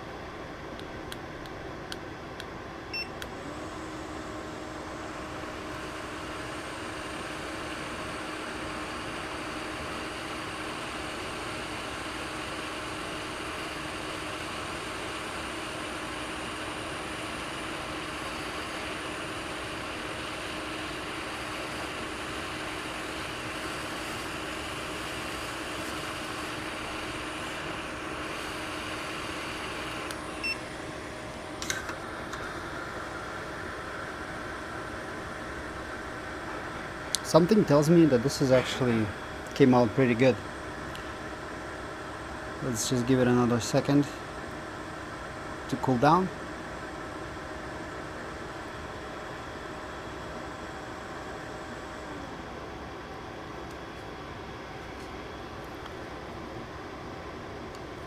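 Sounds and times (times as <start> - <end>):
faint hum: 0.0 - 58.0
hot air blower rushing: 3.3 - 40.4.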